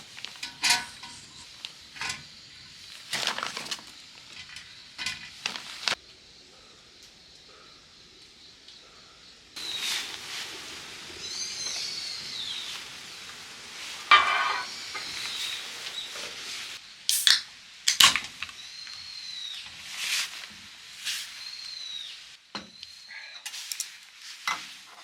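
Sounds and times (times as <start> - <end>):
food sizzling in a pan: 9.6 - 17.8, 18.6 - 22.4
whistled bird calls: 11.2 - 12.8, 21.2 - 23.3.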